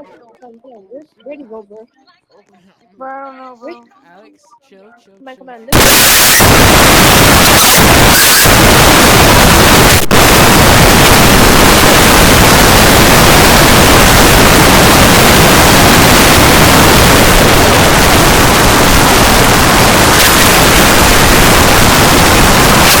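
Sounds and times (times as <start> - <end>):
loud static noise: 5.7 - 23.0.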